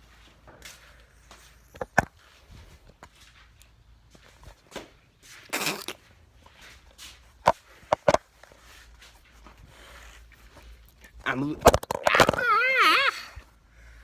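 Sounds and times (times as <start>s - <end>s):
sharp clicks and knocks: 7.4s - 8.2s.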